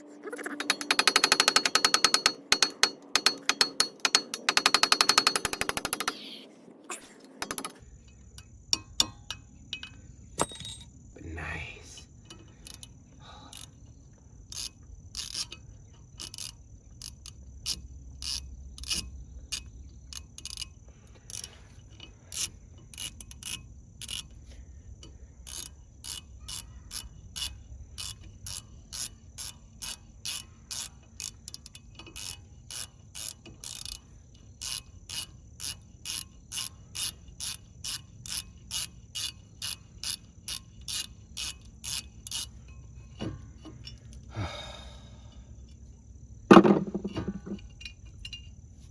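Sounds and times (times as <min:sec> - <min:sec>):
hand ratchet clicking: 0:00.5 - 0:06.3, 0:07.4 - 0:07.8, 0:14.5 - 0:24.4, 0:25.0 - 0:44.3.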